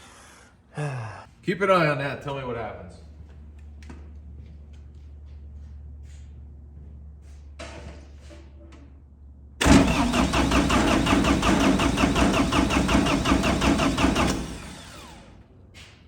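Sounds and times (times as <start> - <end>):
starter motor whine: 9.6 - 15.4
diesel engine cranking: 9.6 - 15.6.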